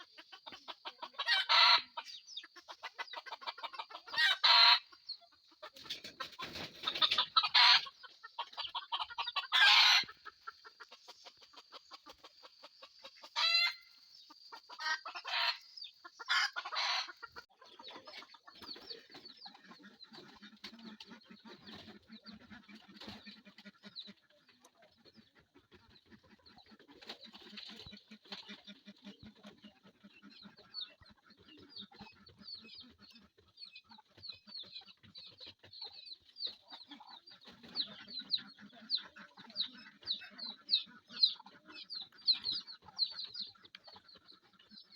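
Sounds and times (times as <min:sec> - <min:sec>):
loud chicken calls: 0:00.0 - 0:02.1, 0:02.7 - 0:05.1, 0:05.7 - 0:14.0, 0:14.6 - 0:19.0
chickens clucking: 0:00.0 - 0:44.9.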